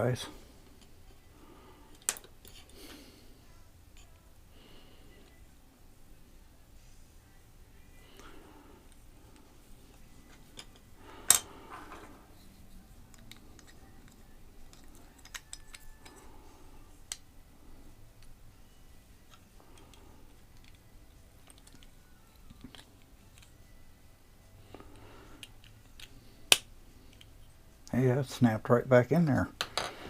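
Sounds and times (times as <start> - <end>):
plastic and metal parts clicking: 13.1 - 16.2, 21.4 - 23.6.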